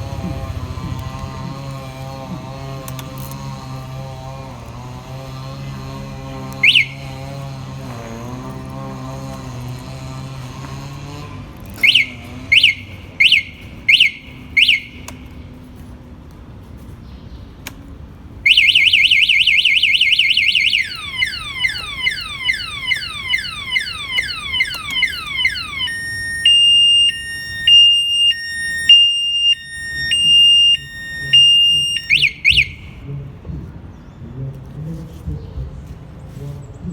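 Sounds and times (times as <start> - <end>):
motorcycle alarm siren: 0.0 - 1.8, 6.5 - 8.4, 11.8 - 15.3, 18.4 - 33.1.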